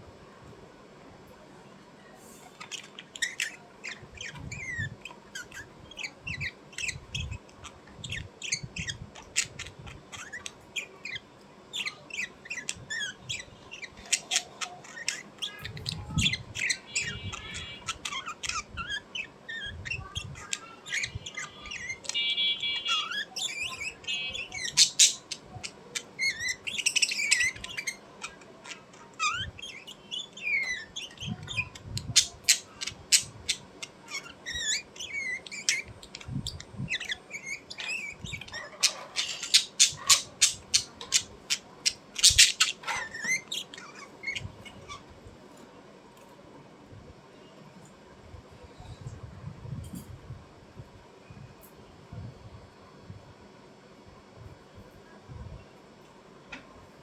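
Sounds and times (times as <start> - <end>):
small birds chirping: 2.0 - 46.3
buzzy bird squawks: 8.0 - 45.1.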